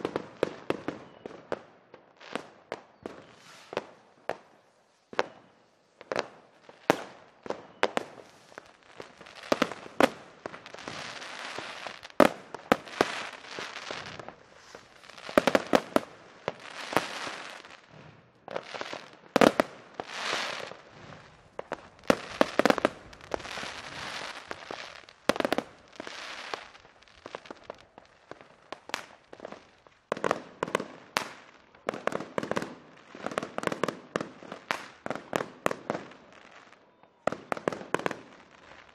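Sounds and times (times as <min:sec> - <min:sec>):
fireworks crackling: 0:00.0 - 0:38.9
fireworks pops: 0:02.3 - 0:29.6
fireworks bangs: 0:02.3 - 0:36.6.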